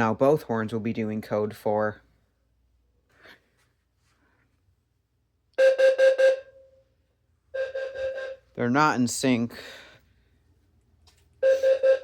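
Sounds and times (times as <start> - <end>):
fire alarm horn beeping: 5.6 - 8.7, 11.4 - 12.0.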